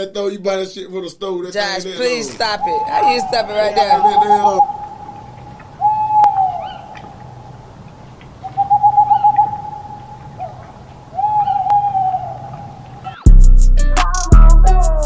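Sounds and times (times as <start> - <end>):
steady hooting tone: 2.0 - 13.3.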